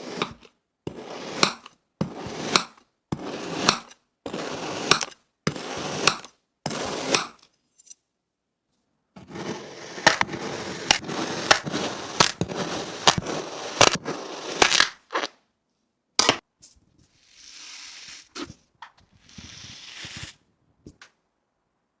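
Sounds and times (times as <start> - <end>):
blade cutting kinetic sand: 0.0 - 7.4, 9.2 - 15.3, 17.2 - 20.4.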